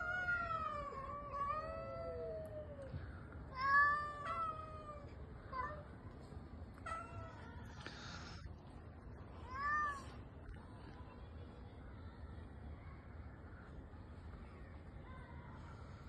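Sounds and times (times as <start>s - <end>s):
cats meowing: 0.0s - 5.9s, 6.8s - 7.8s.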